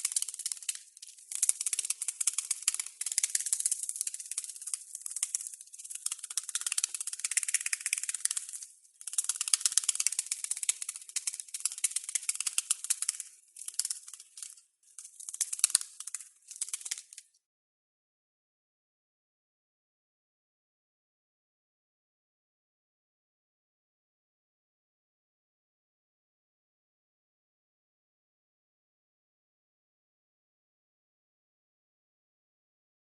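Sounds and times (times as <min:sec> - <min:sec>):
butterfly wings fluttering on window: 0:00.0 - 0:17.3.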